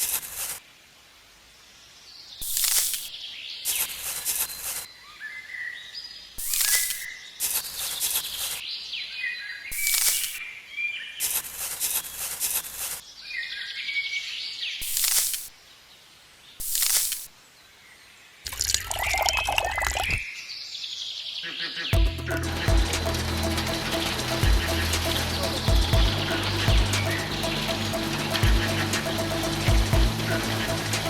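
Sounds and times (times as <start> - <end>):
music: 22.0 - 31.0.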